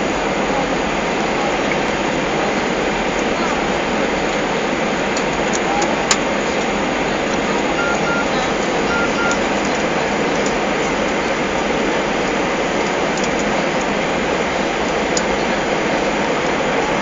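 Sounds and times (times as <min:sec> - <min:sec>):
airliner cabin engine rush: 0:00.0 - 0:17.0.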